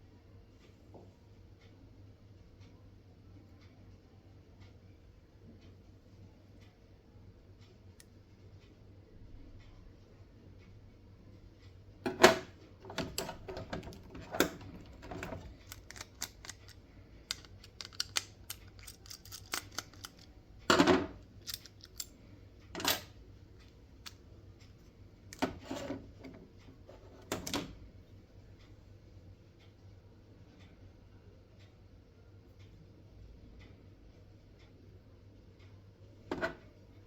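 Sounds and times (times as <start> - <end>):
irregular clicks and knocks: 12.0 - 22.1.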